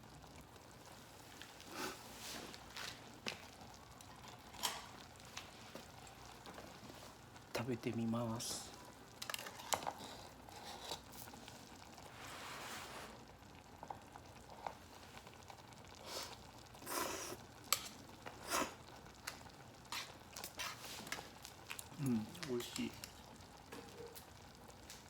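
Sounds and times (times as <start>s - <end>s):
breathy hiss: 1.6s - 2.4s, 16.0s - 17.5s
person slurping: 16.0s - 17.4s, 18.3s - 18.8s.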